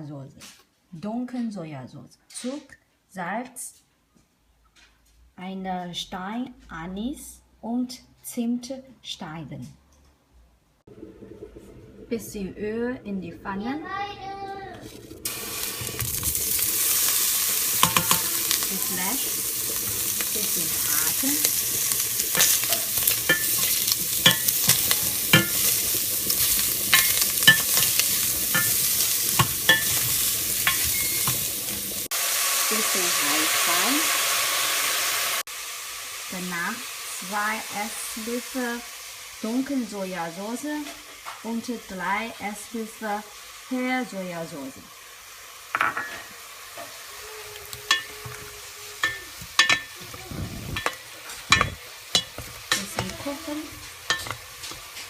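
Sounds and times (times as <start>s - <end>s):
beef sizzling in hot oil: 15.2s - 55.0s
utensil knocking against pan: 17.8s - 18.3s, 22.3s - 25.8s, 26.9s - 31.4s, 47.9s - 50.2s, 50.8s - 54.9s.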